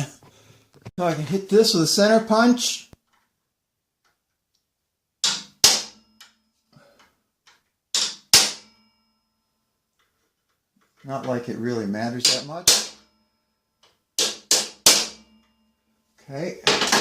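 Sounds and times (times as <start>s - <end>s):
hammer striking metal punch: 5.2s - 6.4s, 7.9s - 9.0s, 12.2s - 13.2s, 14.2s - 15.7s.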